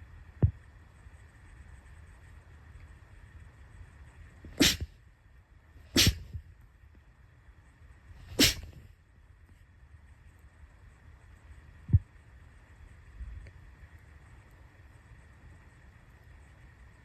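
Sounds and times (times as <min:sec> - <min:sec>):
person sneezing: 0:04.5 - 0:04.9, 0:06.0 - 0:06.3, 0:08.3 - 0:08.8.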